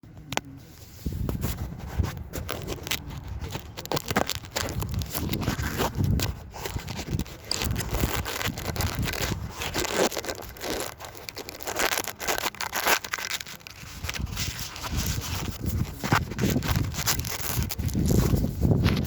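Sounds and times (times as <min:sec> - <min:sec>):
wind buffeting microphone: 0:01.0 - 0:10.7, 0:13.8 - 0:19.0.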